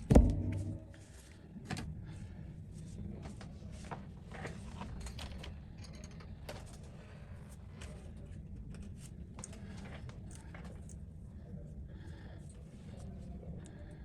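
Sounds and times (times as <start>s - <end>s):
steady low hum: 0.0s - 3.2s.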